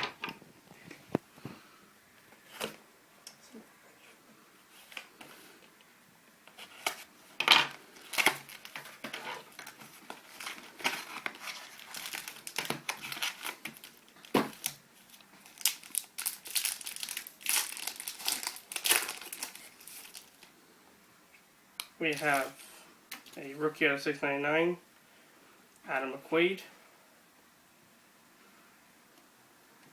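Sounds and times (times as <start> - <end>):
plastic wrapping crinkling and tearing: 6.5 - 20.5, 22.0 - 23.4.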